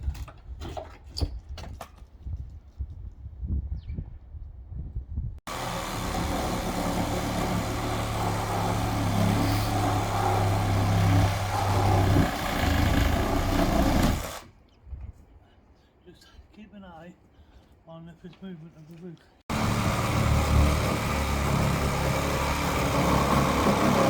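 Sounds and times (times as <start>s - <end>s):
motor running: 5.5s - 14.4s, 19.5s - 24.0s.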